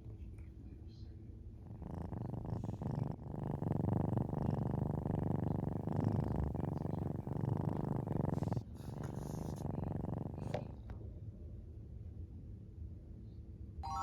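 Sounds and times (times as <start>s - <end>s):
cat purring: 1.5s - 10.9s.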